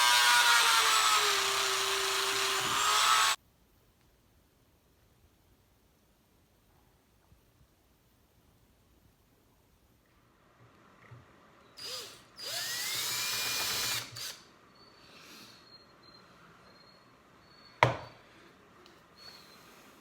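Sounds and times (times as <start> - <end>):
rotary tool whining: 0.0 - 3.4, 11.6 - 15.0.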